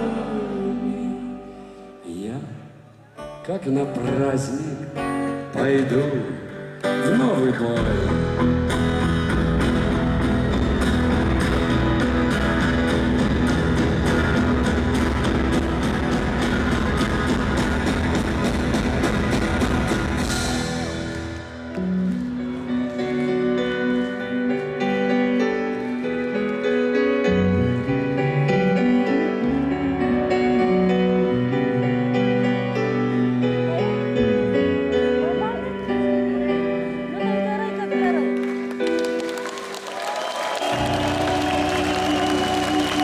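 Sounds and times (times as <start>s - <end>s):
sustained keyboard chords: 4.0s - 39.4s
rock band playing: 7.4s - 25.2s, 40.6s - 43.0s
drum kit beat: 7.8s - 22.0s
bass notes: 7.8s - 23.0s.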